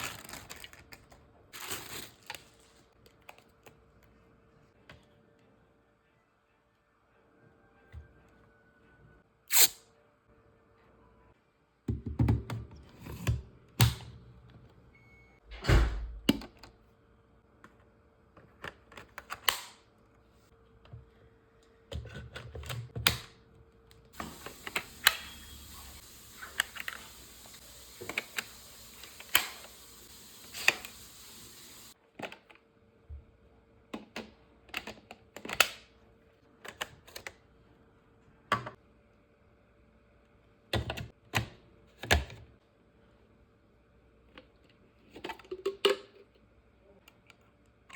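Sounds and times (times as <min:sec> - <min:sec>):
light steady hiss: 0:24.2 - 0:32.0.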